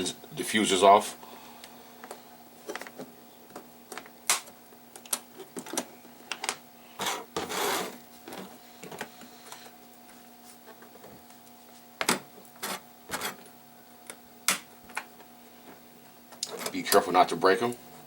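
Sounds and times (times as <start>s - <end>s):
faint steady hum: 0.0s - 18.0s
short scrape: 7.0s - 8.0s.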